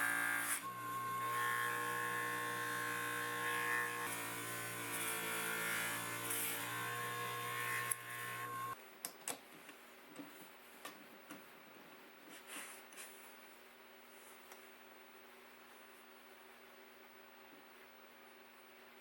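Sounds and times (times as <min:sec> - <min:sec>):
electric motor humming: 0:00.0 - 0:08.8.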